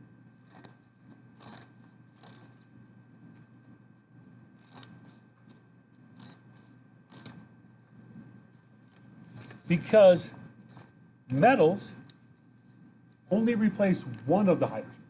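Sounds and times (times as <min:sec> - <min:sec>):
handwriting scratching: 0:00.3 - 0:02.6, 0:04.6 - 0:05.2, 0:06.1 - 0:07.4.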